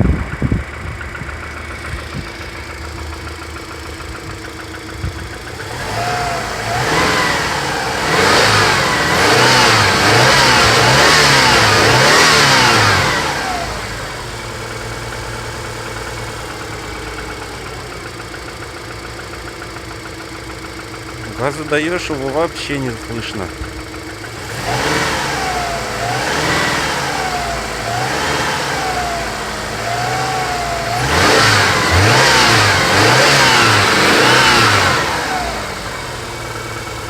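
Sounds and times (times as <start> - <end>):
car engine idling with knock: 0.0 - 37.0
car engine revving: 0.0 - 37.0.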